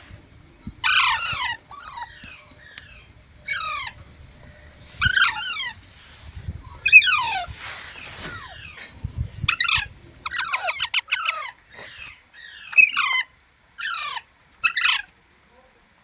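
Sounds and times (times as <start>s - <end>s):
baby parrots squawking: 0.8s - 4.0s, 4.9s - 5.8s, 6.7s - 7.5s, 8.2s - 8.8s, 9.5s - 15.1s.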